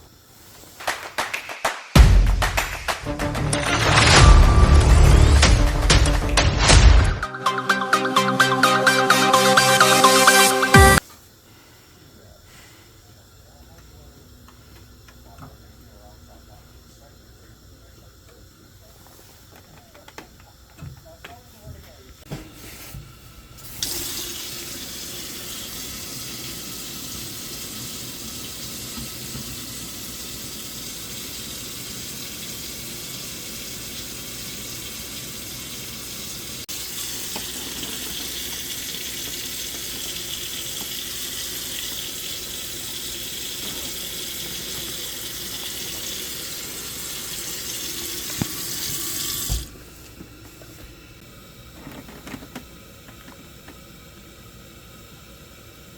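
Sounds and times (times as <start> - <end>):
water running from tap: 23.6 - 49.8.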